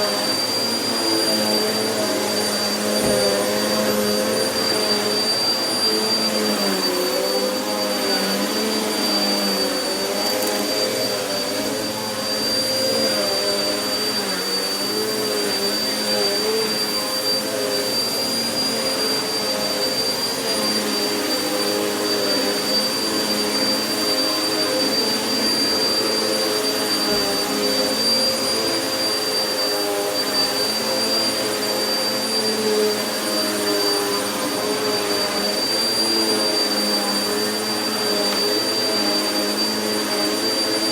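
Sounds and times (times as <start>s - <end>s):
vacuum cleaner running on carpet: 0.0s - 40.9s.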